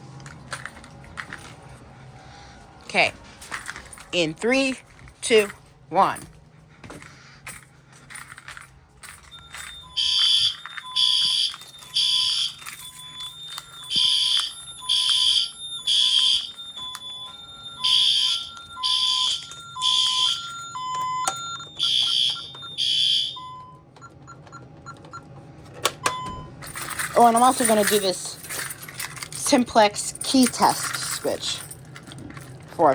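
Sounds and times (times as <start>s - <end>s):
fire alarm horn blasts: 9.3s - 23.8s.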